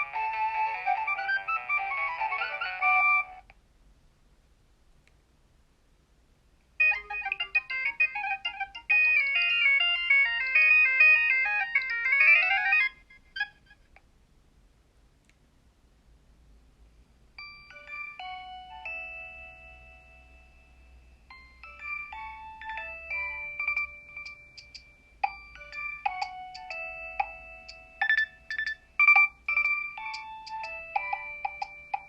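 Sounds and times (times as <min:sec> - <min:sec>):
mobile phone polyphonic ringtone: 0:00.0 - 0:03.4, 0:06.8 - 0:13.8, 0:17.4 - 0:32.0.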